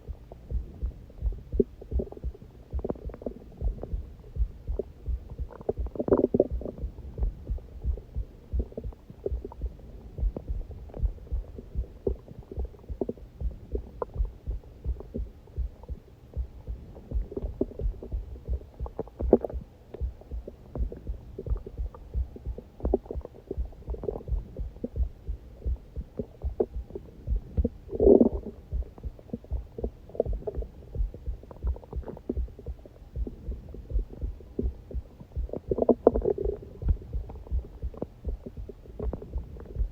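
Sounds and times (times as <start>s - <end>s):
heartbeat thuds: 0.0s - 39.9s
stomach growls gurgling: 4.8s - 7.6s, 18.8s - 20.0s, 26.2s - 28.7s, 29.3s - 39.9s.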